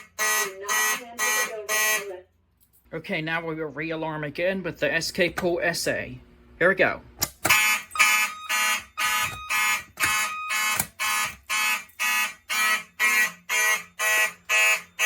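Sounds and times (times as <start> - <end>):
pulsing fire alarm tone: 0.0 - 2.1, 7.5 - 15.0
steady higher alarm tone: 0.0 - 2.2, 7.5 - 15.0.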